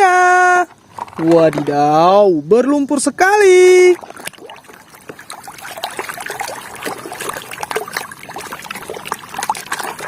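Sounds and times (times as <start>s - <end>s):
water splashing and trickling: 2.9s - 10.0s.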